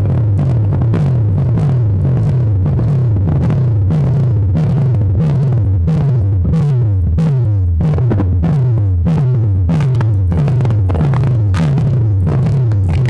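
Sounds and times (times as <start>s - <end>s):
sliding deep bass note: 0.0s - 13.0s
drum machine hits: 7.8s - 13.0s.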